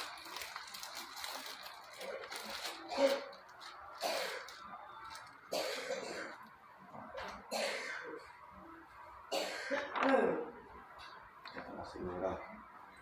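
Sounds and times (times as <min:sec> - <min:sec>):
person coughing: 0:05.5 - 0:06.4, 0:07.5 - 0:08.1, 0:09.3 - 0:10.4.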